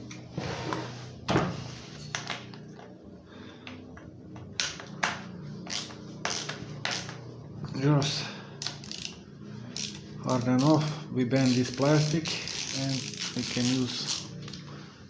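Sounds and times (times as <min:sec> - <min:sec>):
tools clicking and knocking: 0:03.6 - 0:07.2, 0:08.6 - 0:09.2.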